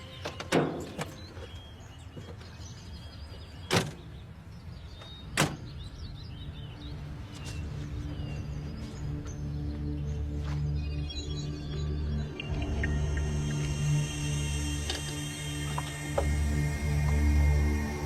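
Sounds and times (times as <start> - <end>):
low steady rumble: 12.1 - 18.0.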